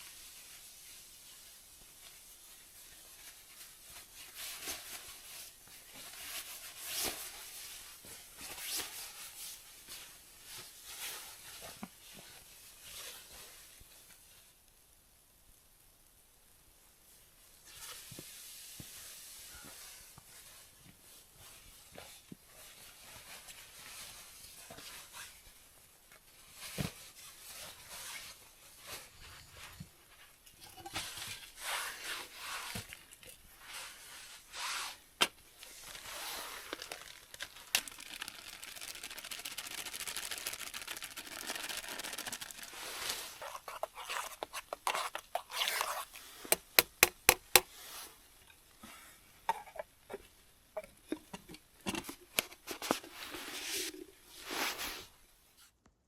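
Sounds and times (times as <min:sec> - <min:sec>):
packaging rustling and crinkling: 0:35.2 - 0:47.8.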